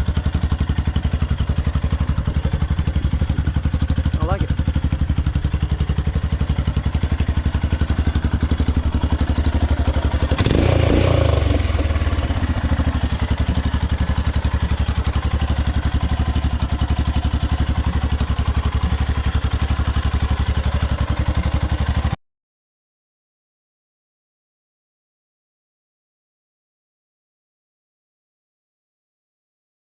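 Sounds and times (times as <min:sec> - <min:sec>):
motorcycle engine thumping: 0:00.0 - 0:22.2.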